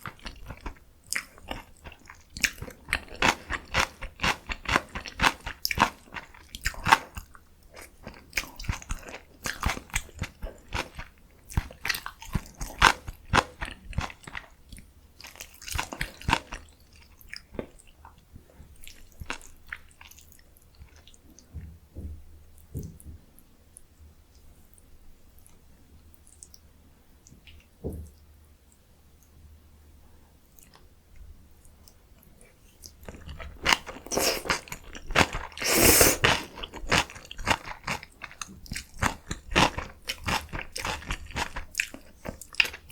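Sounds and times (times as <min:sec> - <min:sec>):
person chewing crunchy food: 0:00.0 - 0:18.2, 0:18.8 - 0:21.2, 0:31.6 - 0:42.9.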